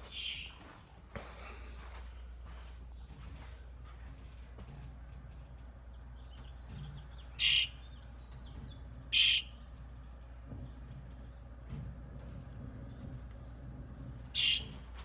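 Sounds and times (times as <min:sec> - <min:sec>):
bird chirping: 0:00.1 - 0:00.6, 0:05.9 - 0:09.8, 0:14.3 - 0:14.8.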